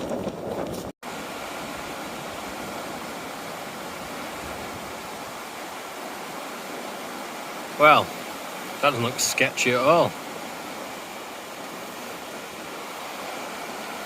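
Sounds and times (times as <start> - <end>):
river water rushing: 1.0 - 14.0.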